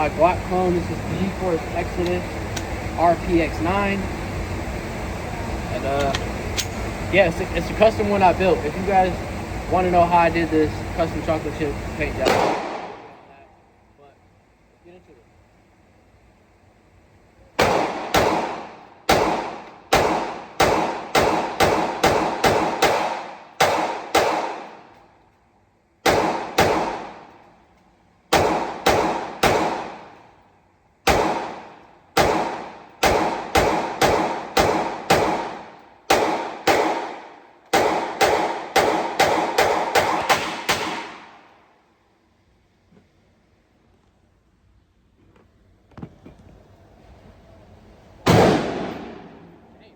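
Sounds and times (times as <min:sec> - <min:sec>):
pistol firing rapid shots: 0:12.2 - 0:13.1, 0:17.6 - 0:25.0, 0:26.0 - 0:27.4, 0:28.3 - 0:30.2, 0:31.0 - 0:41.5, 0:48.3 - 0:49.4
ringing gunshot echo: 0:12.2 - 0:13.2, 0:17.6 - 0:24.9, 0:28.3 - 0:30.2, 0:31.1 - 0:41.5, 0:48.3 - 0:49.6.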